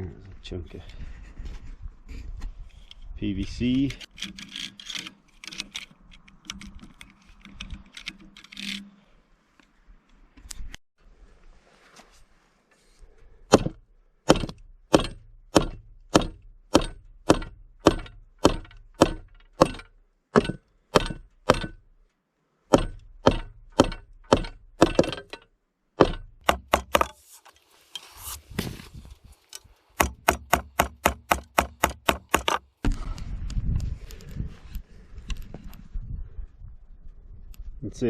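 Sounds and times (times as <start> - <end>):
sharp knocks: 13.5 - 21.8, 22.7 - 27.2.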